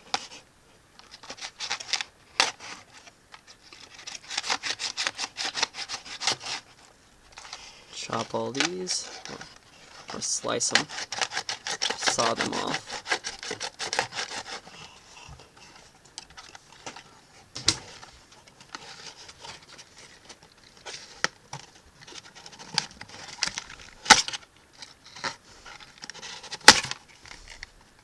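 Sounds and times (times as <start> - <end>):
plastic rustling: 1.0 - 28.0
knife sawing through ties: 3.8 - 6.8, 7.4 - 15.8.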